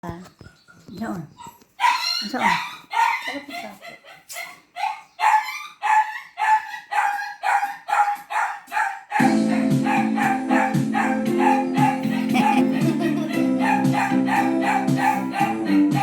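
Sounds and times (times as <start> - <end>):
small dog yipping: 1.4 - 9.2, 9.9 - 12.6
instrumental music: 9.2 - 16.0.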